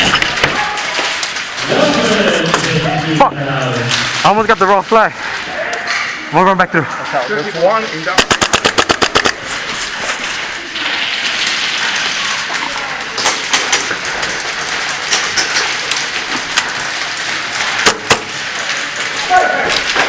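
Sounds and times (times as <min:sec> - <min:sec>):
airsoft shots snapping: 0:08.2 - 0:09.4.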